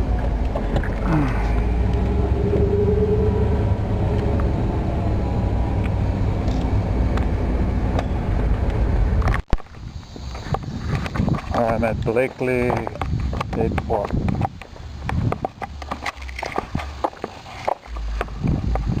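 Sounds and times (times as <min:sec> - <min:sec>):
car engine and road drone: 0:00.0 - 0:10.5.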